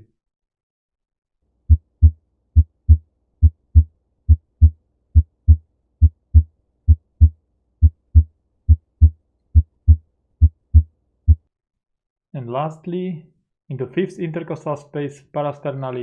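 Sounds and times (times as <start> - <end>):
heartbeat through stethoscope: 1.7 - 11.5.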